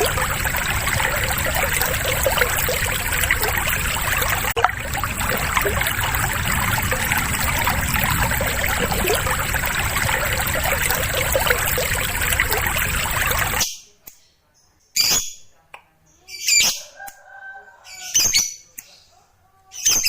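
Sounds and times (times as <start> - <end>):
steady rushing noise: 0.0 - 13.6.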